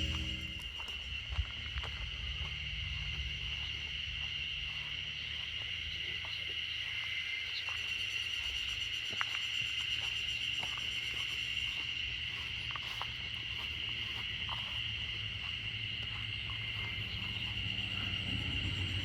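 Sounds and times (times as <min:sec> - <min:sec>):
low rumble: 0:00.0 - 0:00.8
insects chorus buzzing: 0:00.0 - 0:19.0.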